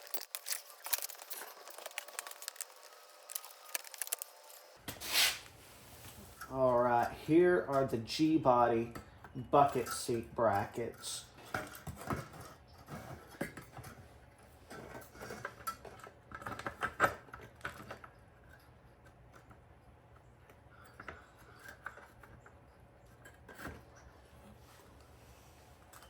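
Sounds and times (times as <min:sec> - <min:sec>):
metallic clicks and clanks: 0:00.0 - 0:04.8.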